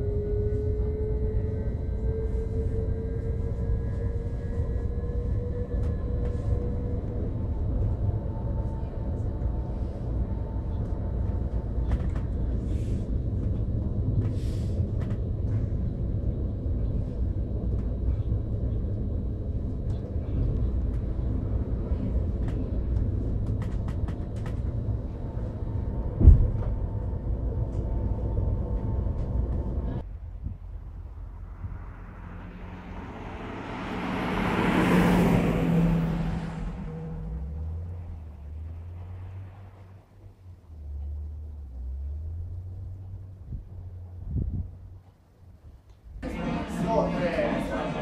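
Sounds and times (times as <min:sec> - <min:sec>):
train rumbling: 0:00.0 - 0:48.0
loud thump: 0:26.2 - 0:26.7.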